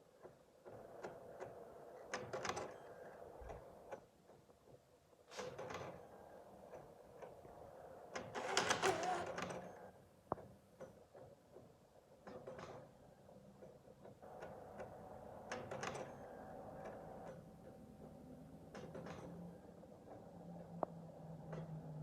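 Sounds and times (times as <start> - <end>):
machine clicking: 8.4 - 9.4
machine whirring: 8.4 - 9.5.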